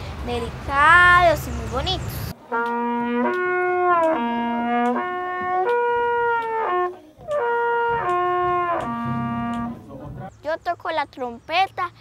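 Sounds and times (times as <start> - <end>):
trumpet playing slow lip slurs: 2.5 - 9.8.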